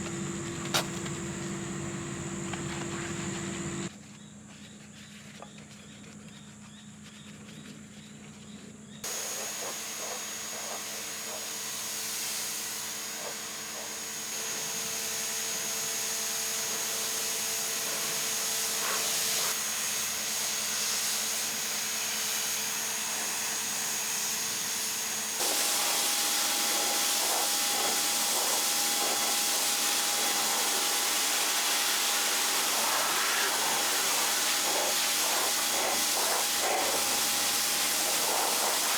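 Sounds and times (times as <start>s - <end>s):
pressure washer motor hum: 0.0s - 3.9s, 9.1s - 38.9s
pressure washer spray hiss: 9.1s - 38.9s.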